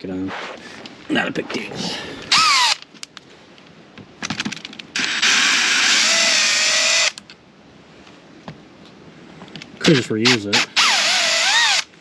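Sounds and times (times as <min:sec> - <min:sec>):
handling clicks and knocks: 0:04.0 - 0:05.0
power drill running: 0:05.0 - 0:07.2, 0:10.5 - 0:11.9.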